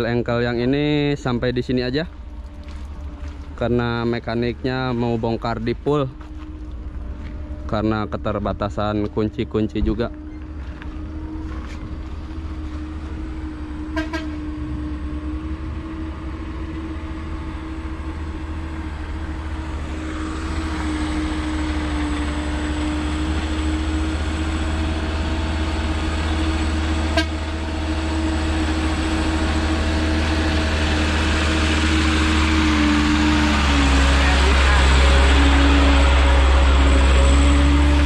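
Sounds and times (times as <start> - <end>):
road and wind rush: 0.0 - 38.0
vehicle engine rumble: 0.0 - 38.0.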